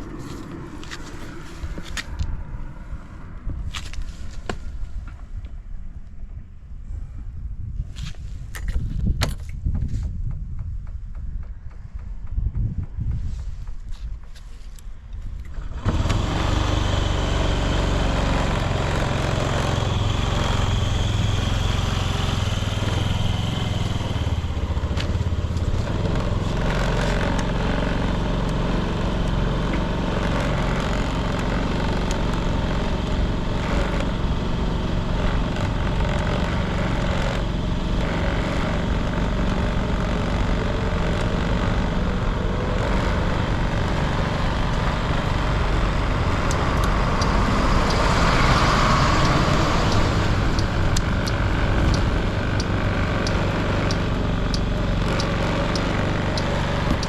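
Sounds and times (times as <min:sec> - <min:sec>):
scooter engine running: 0:00.0 - 0:02.4, 0:15.5 - 0:57.0.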